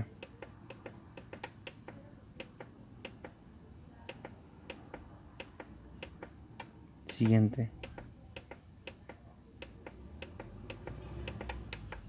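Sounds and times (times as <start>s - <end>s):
synthesizer buttons clicking: 0.0s - 3.4s, 4.1s - 12.0s.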